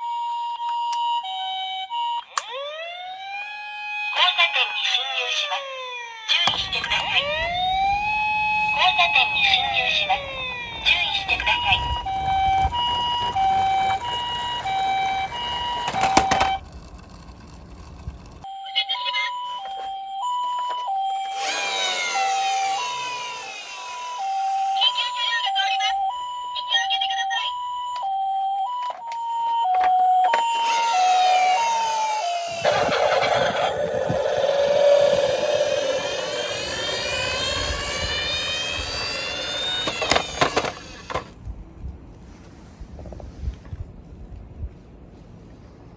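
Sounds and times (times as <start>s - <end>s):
two-tone ambulance siren: 0.0s - 17.1s, 18.4s - 41.4s
toy cars clattering: 6.4s - 18.5s, 28.9s - 41.4s
toy cars whining down slope: 6.4s - 18.5s, 20.6s - 26.2s, 29.7s - 41.4s.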